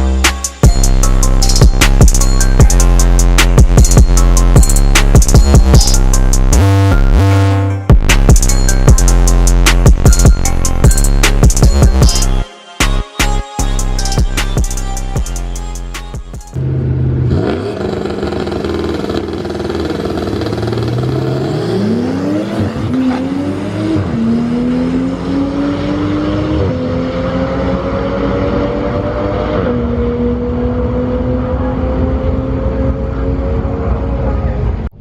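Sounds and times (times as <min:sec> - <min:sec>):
car engine accelerating: 0:16.6 - 0:35.0.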